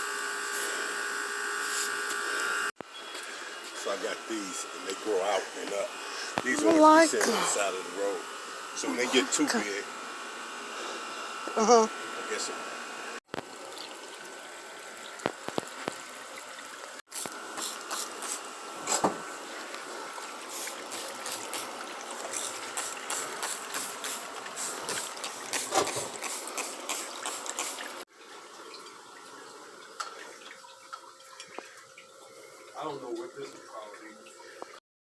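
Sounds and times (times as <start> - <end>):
water running and splashing: 3.8 - 8.1, 13.3 - 18.5, 19.5 - 34.8.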